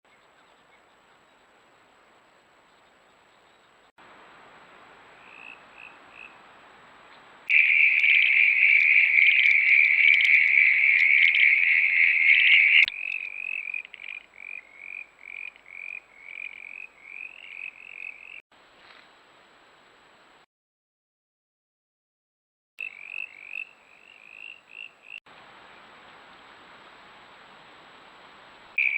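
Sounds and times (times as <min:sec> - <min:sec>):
frogs calling: 0:05.2 - 0:06.4, 0:07.5 - 0:18.4, 0:22.8 - 0:25.2.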